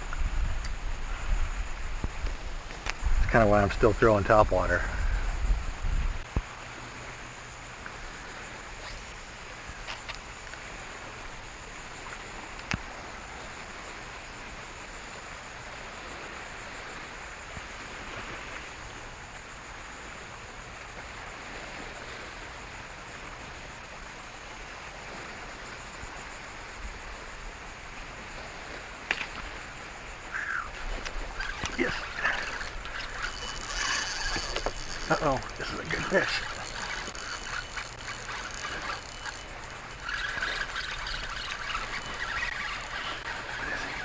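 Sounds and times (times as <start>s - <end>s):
water lapping against boat hull: 0.0s - 7.2s, 27.9s - 44.0s
sharp ticks: 30.3s - 43.6s.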